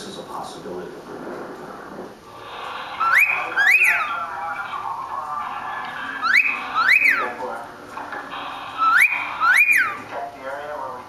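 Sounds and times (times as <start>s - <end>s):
cockatiel whistling: 2.4s - 7.4s, 8.3s - 10.1s.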